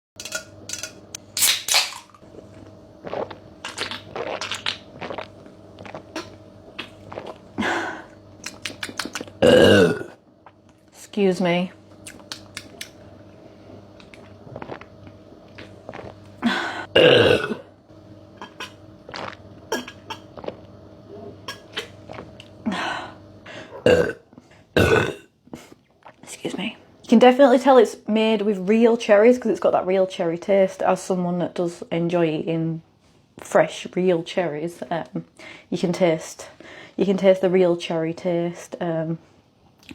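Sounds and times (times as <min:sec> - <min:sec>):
woman burping: 0:09.4 - 0:10.2, 0:16.4 - 0:17.6, 0:23.8 - 0:24.2, 0:24.8 - 0:25.3.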